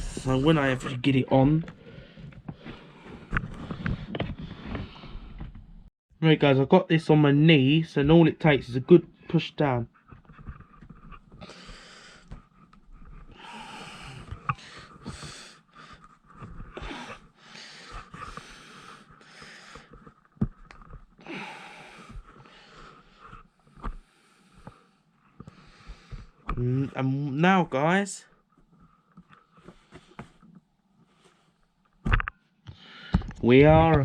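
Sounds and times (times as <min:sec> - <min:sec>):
person breathing hard: 0:11.4 - 0:12.4, 0:13.2 - 0:20.2, 0:21.2 - 0:26.5, 0:32.7 - 0:33.4.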